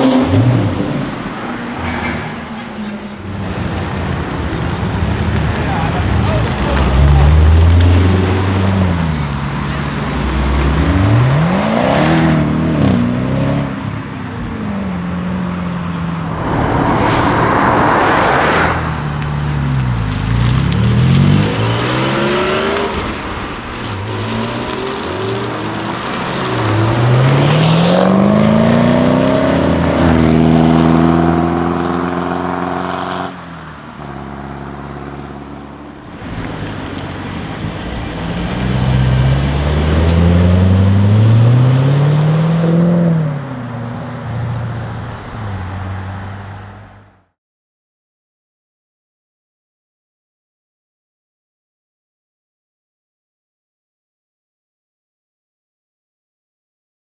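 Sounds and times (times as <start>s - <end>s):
car engine accelerating hard: 0.0s - 47.2s
noisy rush: 15.7s - 20.5s.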